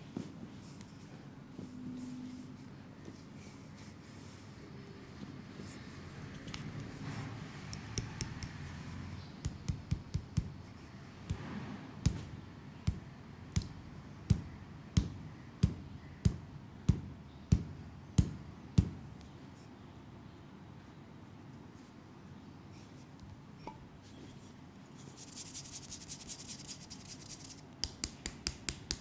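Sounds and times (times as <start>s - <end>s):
hands slapping a leg: 27.5s - 29.0s.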